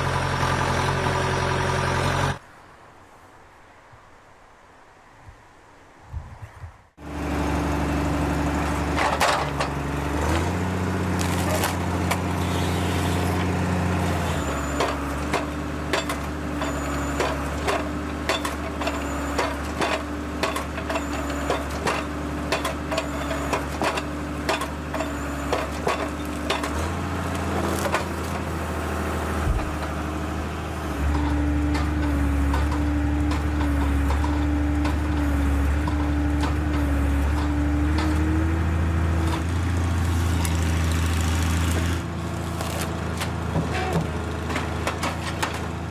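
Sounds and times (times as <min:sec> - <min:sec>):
heavy machine engine running: 0:00.0 - 0:02.4, 0:07.0 - 0:45.9
wood cracking and splintering: 0:11.0 - 0:12.4, 0:25.8 - 0:28.5, 0:39.3 - 0:43.4.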